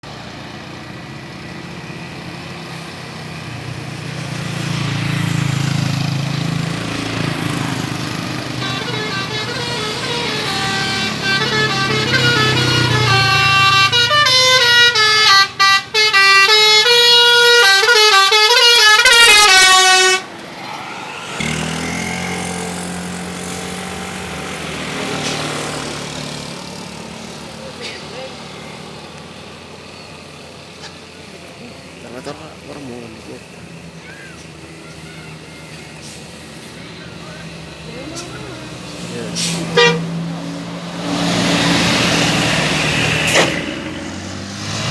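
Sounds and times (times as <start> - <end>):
bus engine low rumble: 0.0 - 4.6, 5.2 - 20.6, 23.1 - 44.9
bus musical air horn playing a tune: 7.6 - 20.4, 38.1 - 40.6.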